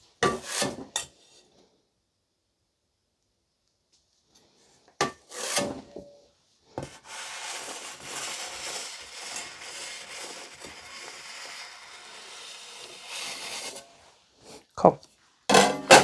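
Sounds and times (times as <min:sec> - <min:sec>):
cake scraper rubbing buttercream: 0:06.8 - 0:14.1.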